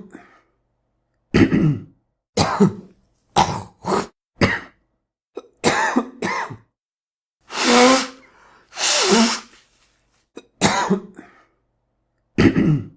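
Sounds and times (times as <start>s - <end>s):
man clearing his throat: 1.3s - 2.8s, 10.6s - 11.3s, 12.4s - 12.9s
man coughing: 1.4s - 2.8s, 5.6s - 6.7s, 10.6s - 11.3s, 12.4s - 12.9s.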